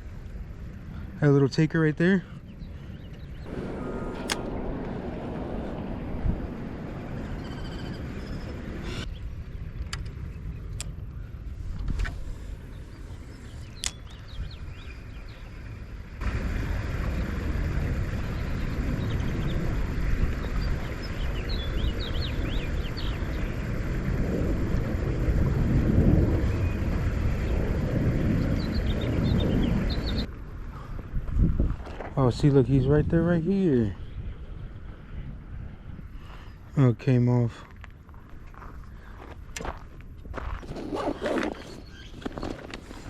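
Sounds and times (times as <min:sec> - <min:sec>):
traffic noise: 0:02.5 - 0:11.8
wind on microphone: 0:02.5 - 0:36.8
faint bird chirps: 0:07.3 - 0:09.2.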